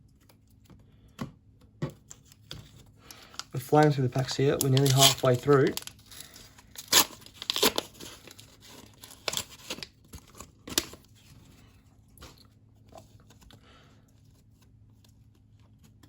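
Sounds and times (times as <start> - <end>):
wrapper tearing and crinkling: 3.1 - 11.2.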